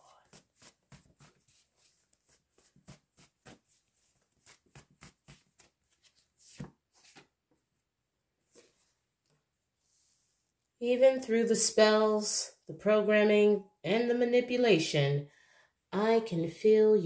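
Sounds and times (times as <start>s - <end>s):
cards being shuffled: 0.2s - 7.3s.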